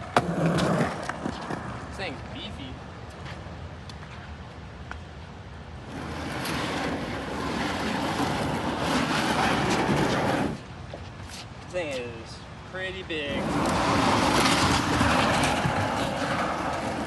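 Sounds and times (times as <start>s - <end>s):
wheels hissing on wet pavement: 5.8s - 10.6s, 13.4s - 17.0s.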